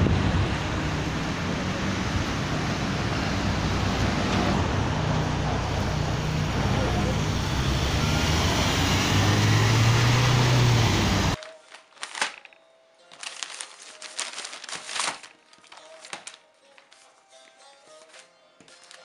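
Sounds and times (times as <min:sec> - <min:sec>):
low engine hum: 0:00.0 - 0:11.4
road traffic noise: 0:00.0 - 0:11.4
rustling: 0:11.4 - 0:17.1, 0:17.8 - 0:19.0
faint background music: 0:11.4 - 0:19.0.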